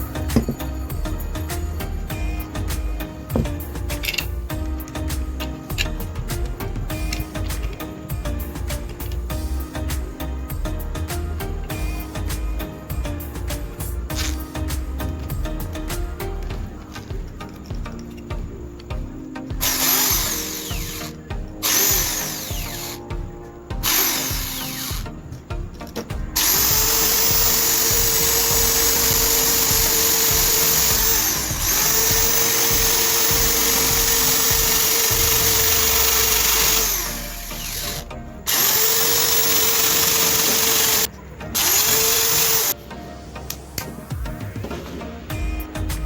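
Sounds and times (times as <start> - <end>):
electric drill motor whine: 0.0 - 8.0, 19.0 - 42.8.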